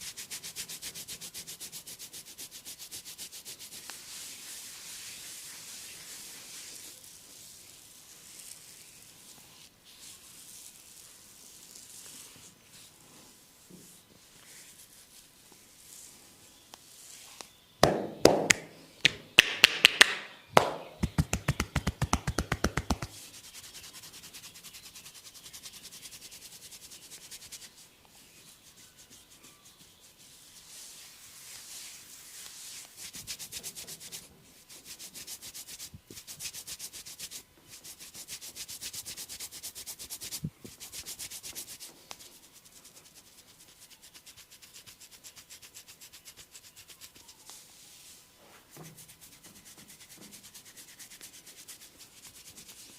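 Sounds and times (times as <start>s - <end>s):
hands rubbing skin: 0.1s - 16.1s, 17.1s - 27.9s, 28.5s - 48.2s, 48.9s - 52.9s
sharp slaps on skin: 17.8s - 23.2s.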